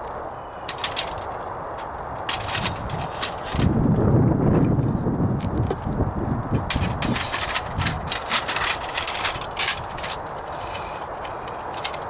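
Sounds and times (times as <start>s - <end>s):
metal stove parts clinking: 0.7s - 4.0s, 6.5s - 12.0s.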